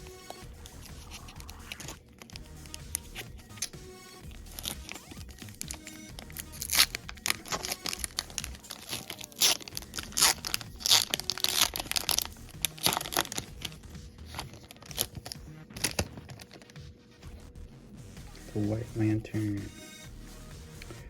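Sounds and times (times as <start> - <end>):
foil wrapper tearing and crinkling: 4.5 - 16.8.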